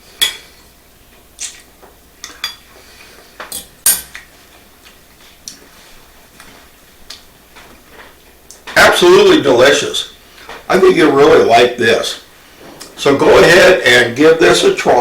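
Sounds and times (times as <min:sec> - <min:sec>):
cutlery clinking on a plate: 0:03.5 - 0:04.2.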